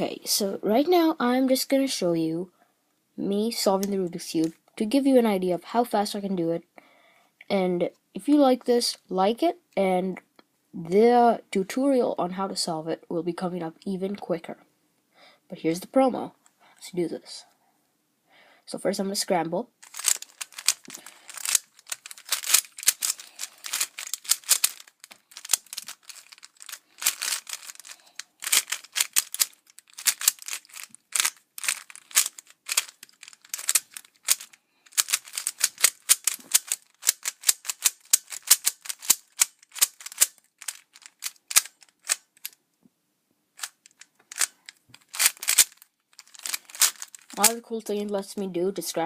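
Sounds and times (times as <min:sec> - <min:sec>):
speed cube plastic clicking: 0:19.8 - 0:42.6, 0:43.6 - 0:47.6.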